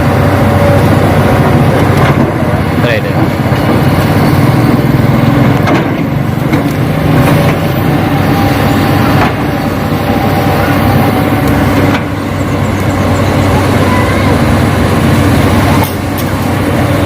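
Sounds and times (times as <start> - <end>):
heavy engine humming: 0.0 - 17.0.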